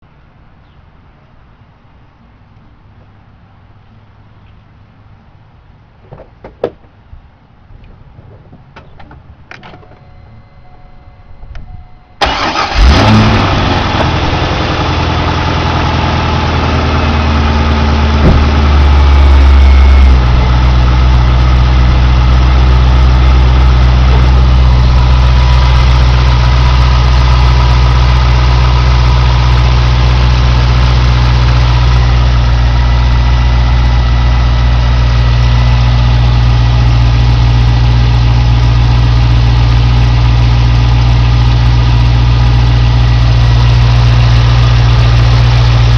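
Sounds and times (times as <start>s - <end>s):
car engine starting and idling: 8.0s - 45.9s
engine ticking: 12.2s - 45.9s.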